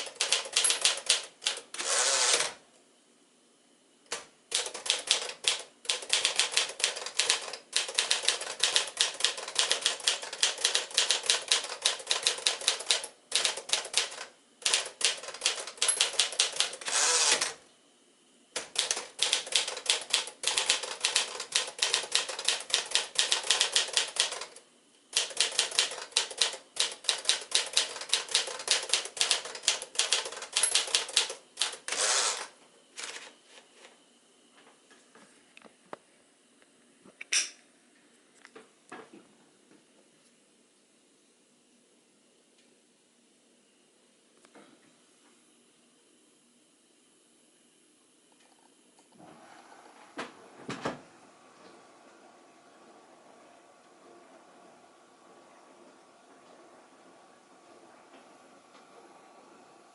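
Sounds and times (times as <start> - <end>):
manual typewriter typing: 0.0 - 2.6, 4.1 - 17.6, 18.6 - 24.6, 25.2 - 33.3.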